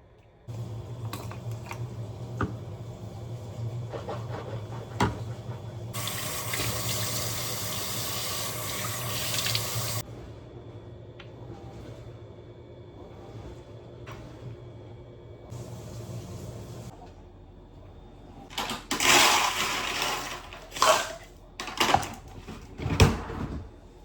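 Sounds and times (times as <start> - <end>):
tap water running into sink: 0.5 - 3.8, 4.8 - 10.0.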